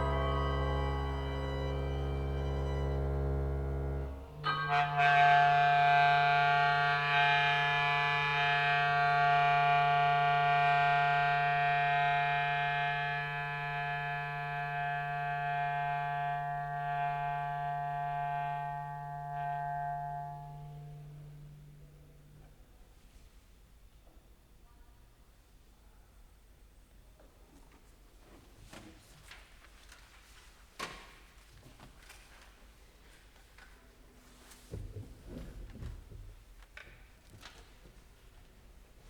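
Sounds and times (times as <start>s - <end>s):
chamber ensemble holding chord: 0.0s - 22.3s.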